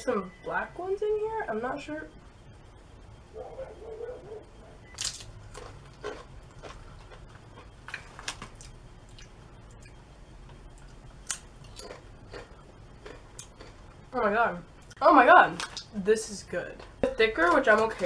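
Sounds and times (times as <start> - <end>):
chewing crunchy chips: 4.9 - 10.0, 10.7 - 14.1.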